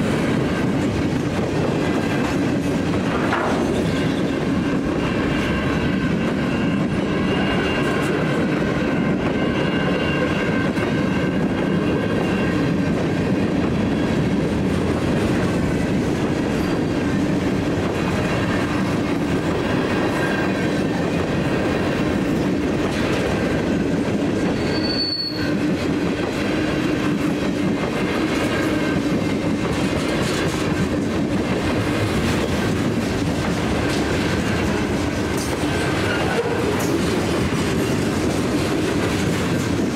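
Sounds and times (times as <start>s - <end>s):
rumble of train wheels on rail: 0.0s - 39.9s
high squealing wheel tones: 24.5s - 25.6s.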